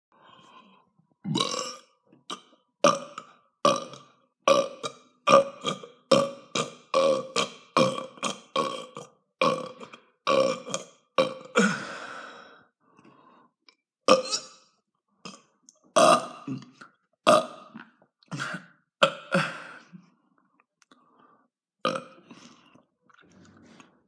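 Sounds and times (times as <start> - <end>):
person burping: 1.2 - 12.0, 14.1 - 14.6, 15.2 - 20.0, 21.8 - 22.7.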